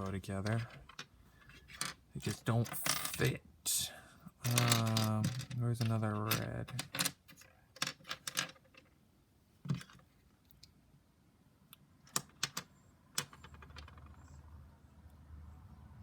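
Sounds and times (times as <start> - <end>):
plastic pieces clicking: 4.4 - 8.9.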